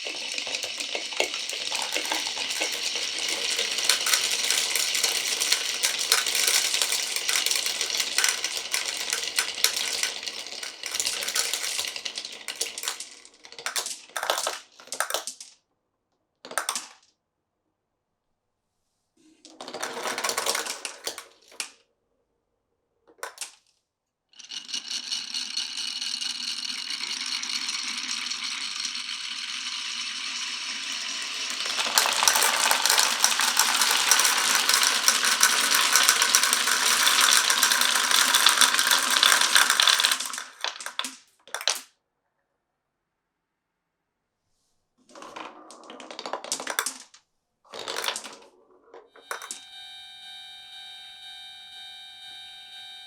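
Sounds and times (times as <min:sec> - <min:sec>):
marbles clicking: 0:00.0 - 0:15.5, 0:16.5 - 0:17.0, 0:19.7 - 0:21.7, 0:23.2 - 0:23.6, 0:24.4 - 0:41.9, 0:45.2 - 0:48.5, 0:49.2 - 0:49.6
glass marbles rolling on a track: 0:00.0 - 0:15.6, 0:16.5 - 0:17.0, 0:19.5 - 0:21.8, 0:23.2 - 0:23.6, 0:24.4 - 0:41.9, 0:45.1 - 0:49.6.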